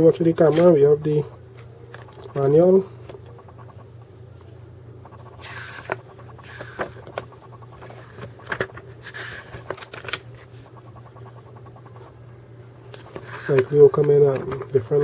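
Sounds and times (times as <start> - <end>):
steady low hum: 0.0 - 15.0
paper pages rustling: 5.2 - 10.6, 12.8 - 14.8.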